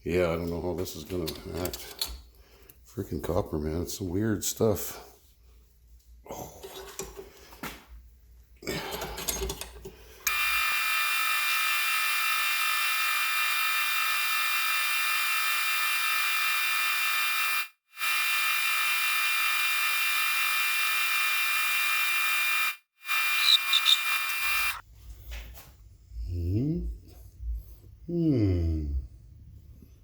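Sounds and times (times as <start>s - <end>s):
metal lathe whining: 23.1s - 24.8s.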